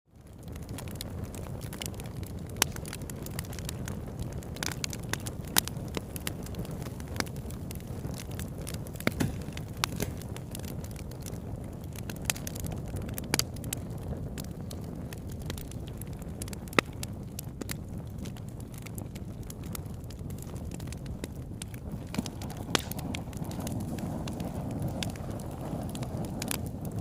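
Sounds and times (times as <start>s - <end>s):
burning wood crackling: 0.1s - 27.0s
flame rushing: 0.2s - 27.0s.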